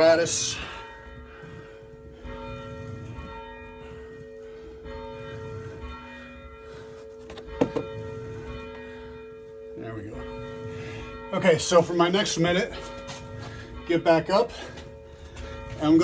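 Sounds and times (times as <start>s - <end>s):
church bell tolling: 0.0s - 16.0s
sharp knocks: 7.3s - 8.1s.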